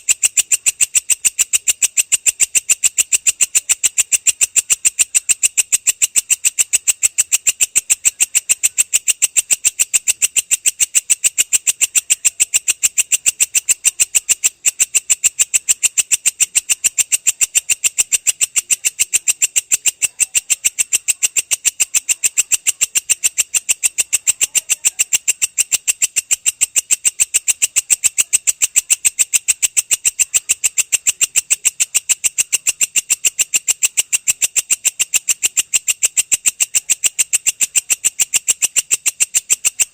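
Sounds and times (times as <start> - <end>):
katydid buzzy chirps: 0.0 - 39.9.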